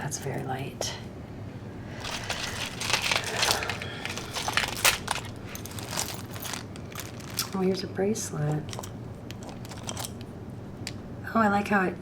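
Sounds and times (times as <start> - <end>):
jewelry rummaged in crackly bag: 2.0 - 11.2.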